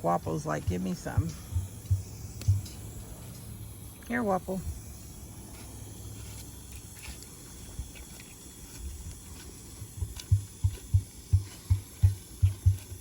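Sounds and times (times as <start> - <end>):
faint outdoor background: 0.0 - 13.0
dull low thumps: 0.1 - 3.2, 9.8 - 13.0.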